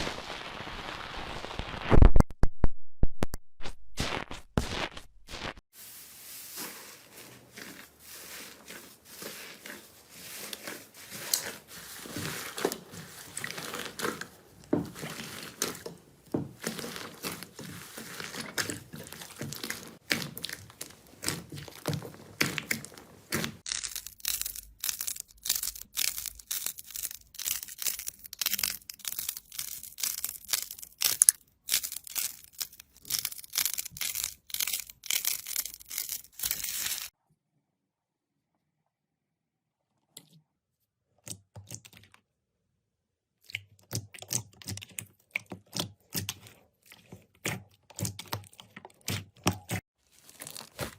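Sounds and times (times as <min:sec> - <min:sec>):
slime crackling and crunching by hand: 0:04.0 - 0:37.1, 0:43.6 - 0:50.9.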